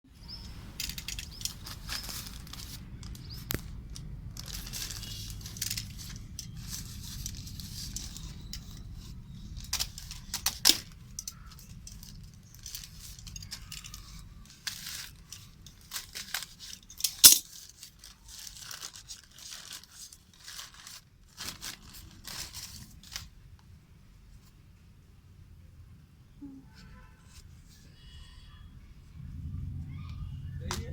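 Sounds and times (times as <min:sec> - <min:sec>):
packaging rustling and tearing: 0:00.8 - 0:23.4.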